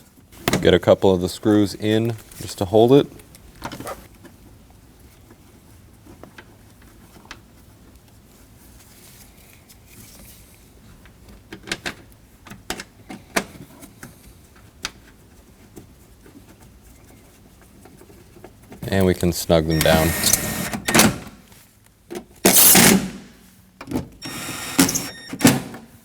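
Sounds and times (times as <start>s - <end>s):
screwdriver and screws clicking: 24.2s - 25.2s.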